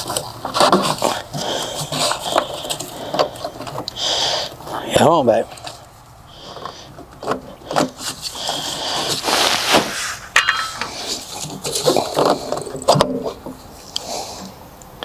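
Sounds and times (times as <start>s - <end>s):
short metallic ring: 10.4s - 10.9s
metal parts scraping and clinking: 10.4s - 12.7s.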